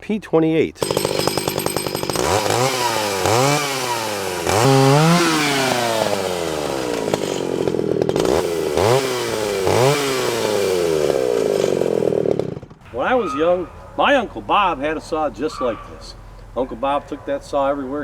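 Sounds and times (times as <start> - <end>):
chainsaw revving: 0.8 - 13.6.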